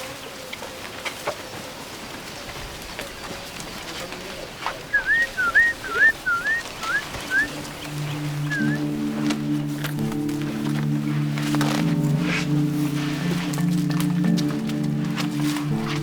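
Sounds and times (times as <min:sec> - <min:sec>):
faint outdoor background: 0:00.0 - 0:16.0
bird whistling rising notes: 0:04.9 - 0:09.6
low music: 0:05.3 - 0:16.0.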